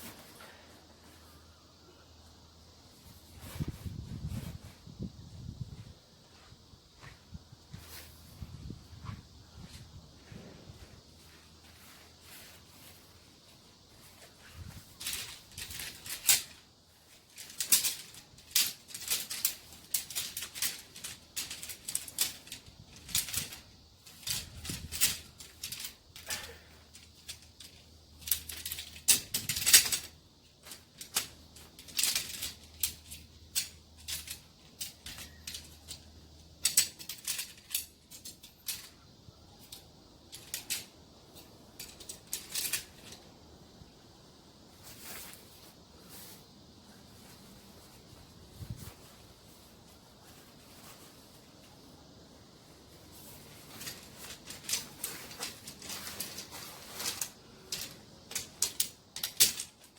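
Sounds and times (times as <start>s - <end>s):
gear handling clicks and rustles: 11.2s - 43.9s, 44.7s - 59.9s.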